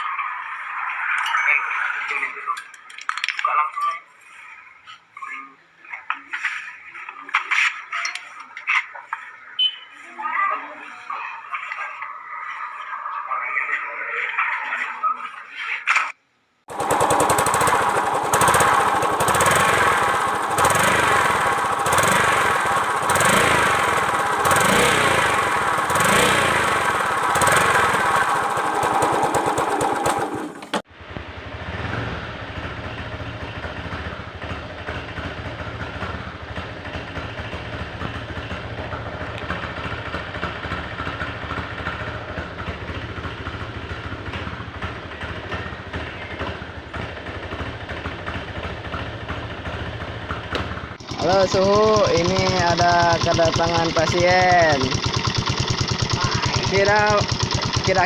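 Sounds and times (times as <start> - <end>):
motorcycle engine idling: 16.7 - 58.0
motorcycle engine pulsing: 16.7 - 58.0.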